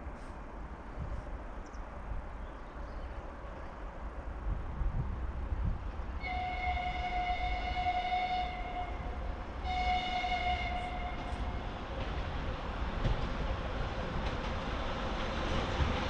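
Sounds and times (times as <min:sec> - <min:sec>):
locomotive horn blasts: 0:06.2 - 0:11.6.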